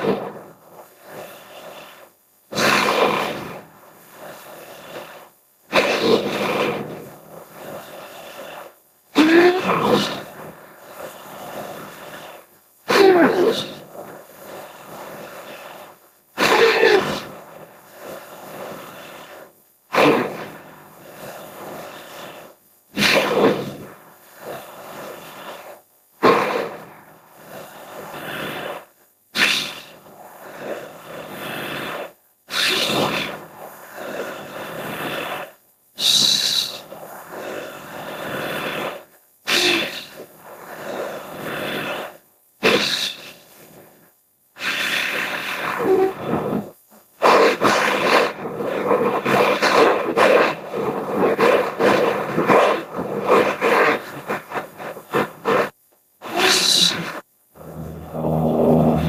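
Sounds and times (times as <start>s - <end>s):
creature calls: 56.2s - 59.0s.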